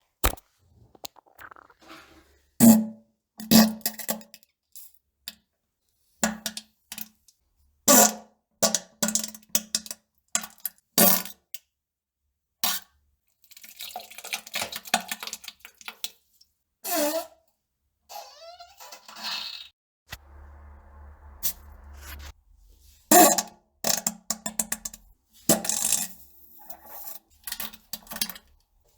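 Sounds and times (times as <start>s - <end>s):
crackling sputtering fart: 0.2s - 2.2s
farts: 0.2s - 2.2s.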